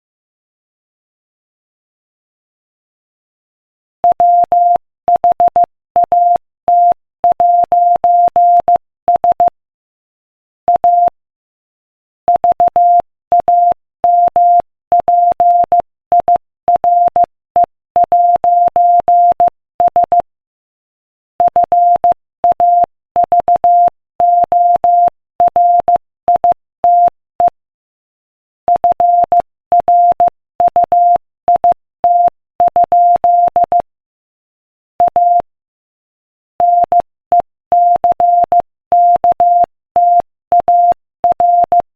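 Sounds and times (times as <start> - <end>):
morse code beeps: 4.0 - 9.5, 10.7 - 11.1, 12.4 - 17.3, 18.1 - 20.2, 21.5 - 27.5, 28.7 - 33.9, 35.0 - 35.5, 36.6 - 41.9.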